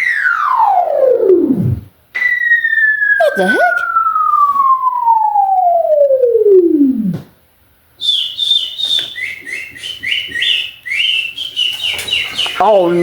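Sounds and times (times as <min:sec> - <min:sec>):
whistle-like tone sliding down: 0:03.9 - 0:06.8
rapid high chirps: 0:08.0 - 0:13.0.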